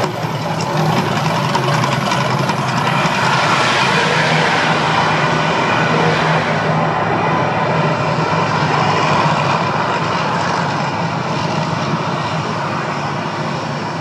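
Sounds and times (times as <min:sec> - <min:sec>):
loud rushing noise: 0:00.0 - 0:14.0
low hum: 0:00.0 - 0:14.0.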